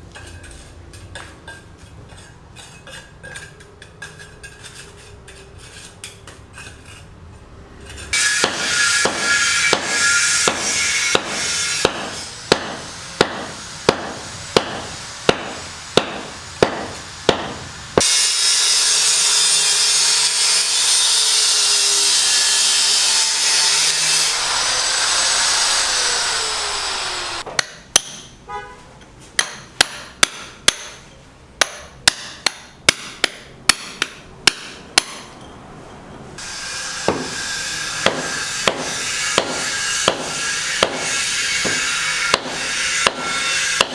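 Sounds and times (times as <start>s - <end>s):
hammer blows: 8.2s - 28.7s, 36.4s - 43.9s
power tool running: 18.0s - 27.5s.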